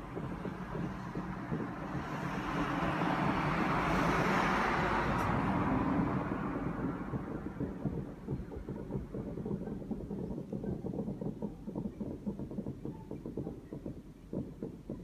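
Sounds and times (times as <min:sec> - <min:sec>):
vehicle passing by: 0:00.0 - 0:08.4.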